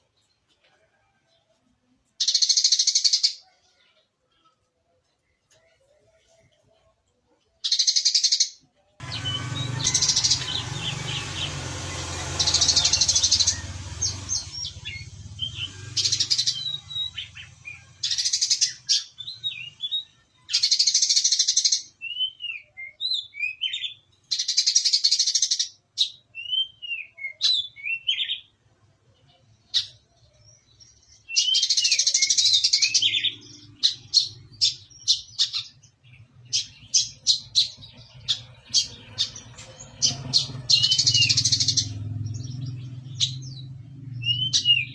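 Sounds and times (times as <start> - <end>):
bird rapid high chatter: 7.7 - 21.9, 31.3 - 42.0
bird downslurred chirps: 9.0 - 25.4, 31.2 - 44.9.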